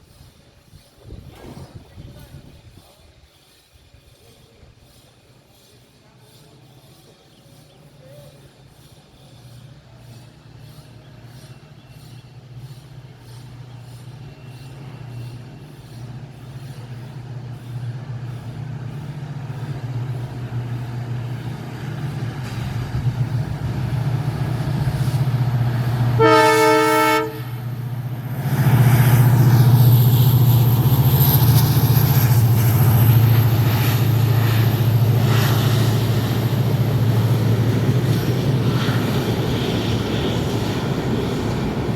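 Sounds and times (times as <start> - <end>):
locomotive engine humming: 8.2 - 41.9
train horn blast: 25.9 - 27.8.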